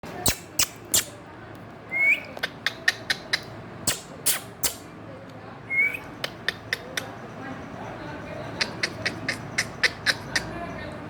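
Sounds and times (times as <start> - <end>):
parrot making sharp clicks: 0.2 - 1.1, 2.2 - 4.9, 6.2 - 7.1, 8.6 - 10.5.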